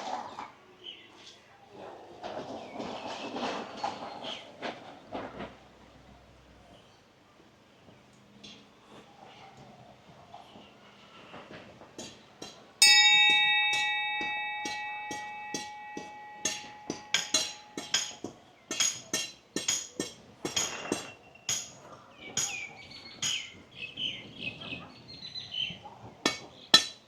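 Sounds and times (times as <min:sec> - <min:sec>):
sharp knocks: 0:12.0 - 0:21.8
bell ringing: 0:12.8 - 0:18.3.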